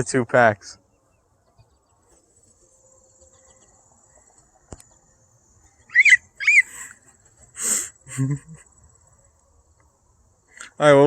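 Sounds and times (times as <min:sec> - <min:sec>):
rising-and-falling chirps: 0:01.6 - 0:09.5
high-pitched insect buzz: 0:02.1 - 0:09.5.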